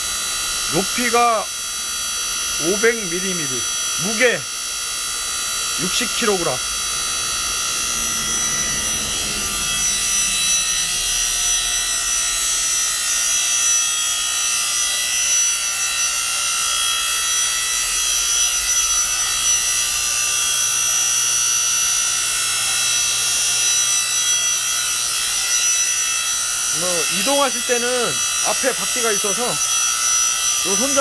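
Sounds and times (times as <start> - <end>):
hydraulic pump motor whining: 0.0 - 20.9.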